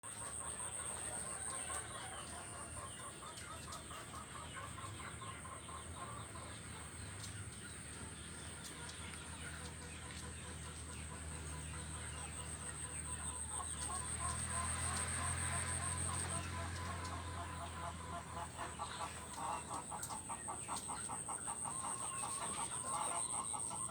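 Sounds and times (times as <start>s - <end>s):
chickens clucking: 0.0s - 23.9s.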